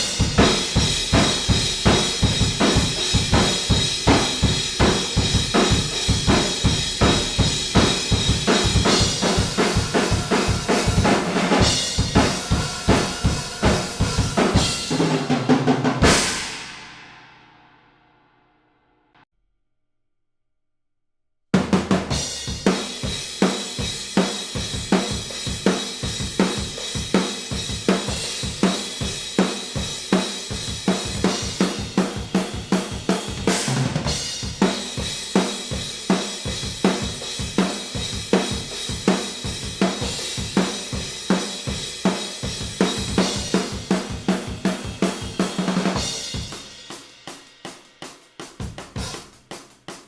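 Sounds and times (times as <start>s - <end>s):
acoustic drum kit groove: 0.0s - 17.1s, 21.6s - 50.0s.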